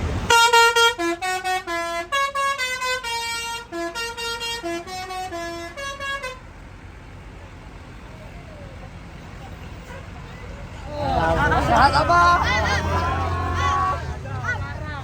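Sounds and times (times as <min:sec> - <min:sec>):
bus horn playing a tune: 0:00.2 - 0:06.6, 0:09.6 - 0:10.9.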